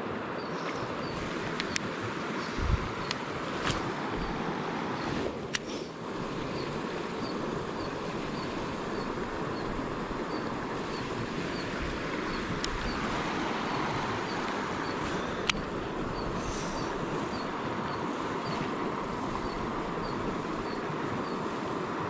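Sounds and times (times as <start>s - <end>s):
mountain stream rushing: 0.0s - 22.0s.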